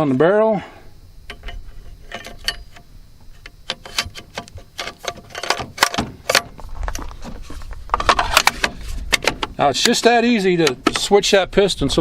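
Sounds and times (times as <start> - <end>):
shotgun metal clicks and clinks: 1.3 - 7.1.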